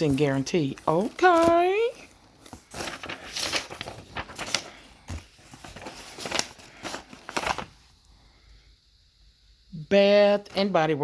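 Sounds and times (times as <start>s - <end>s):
packing material crinkling: 0.0s - 8.0s.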